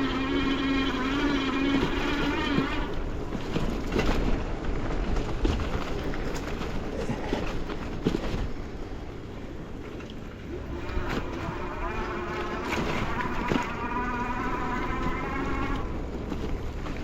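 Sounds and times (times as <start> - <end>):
buzzing whine: 0.0 - 4.2, 7.5 - 17.0
bicycle rumbling over trail: 0.0 - 9.8, 10.4 - 17.0.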